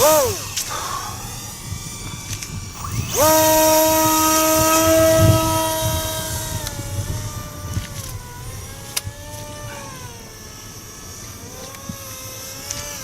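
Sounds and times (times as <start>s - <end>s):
model plane engine wavering: 0.0s - 13.0s.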